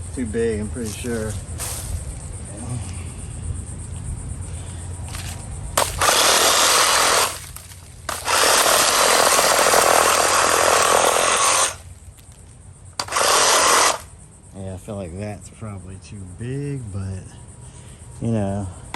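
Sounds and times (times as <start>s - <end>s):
wood chipper grinding a branch: 5.1s - 14.1s.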